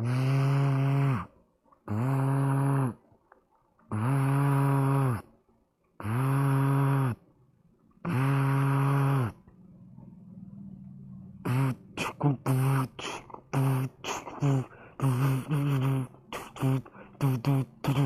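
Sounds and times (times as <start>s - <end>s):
person imitating phone vibrating: 0.0s - 1.3s, 1.9s - 3.0s, 3.9s - 5.3s, 6.0s - 7.2s, 8.0s - 9.5s, 11.4s - 18.0s.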